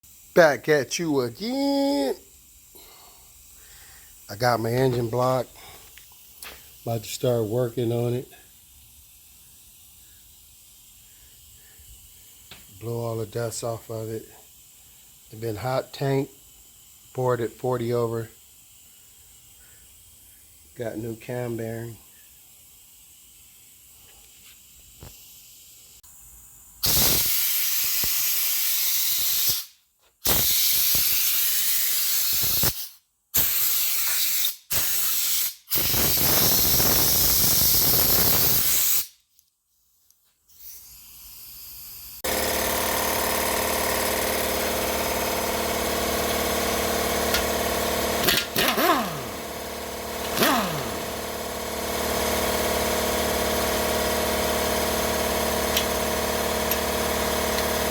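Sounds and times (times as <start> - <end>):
compressed air blow gun hissing: 0.0 - 39.2, 40.5 - 51.8
machine hum: 42.3 - 57.9.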